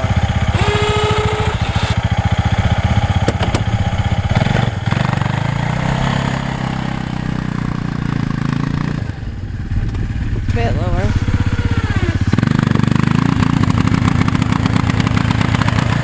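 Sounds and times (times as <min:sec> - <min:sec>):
atv engine running: 0:00.0 - 0:16.0
short knocks: 0:03.2 - 0:03.8.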